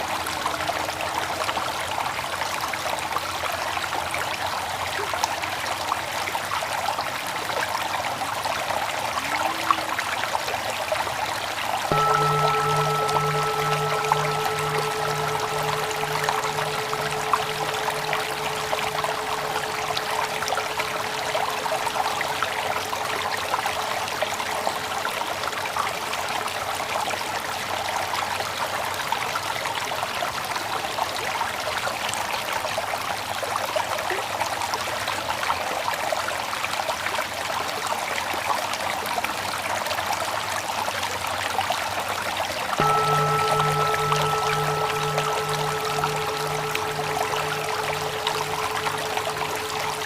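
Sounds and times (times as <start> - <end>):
bell humming: 11.9 - 25.0, 42.8 - 50.0
stream water flowing: 11.9 - 25.6, 42.8 - 50.0.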